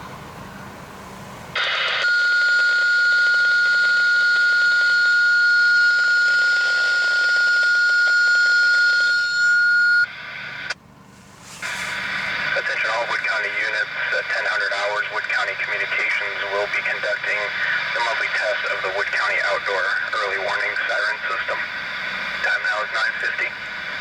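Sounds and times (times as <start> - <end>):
radio alert tone: 1.6 - 10.8, 11.6 - 23.7
burst of static: 10.2 - 24.0.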